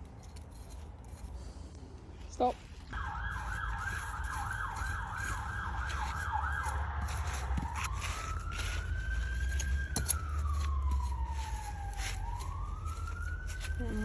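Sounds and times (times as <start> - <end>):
emergency vehicle siren: 2.9 - 14.0.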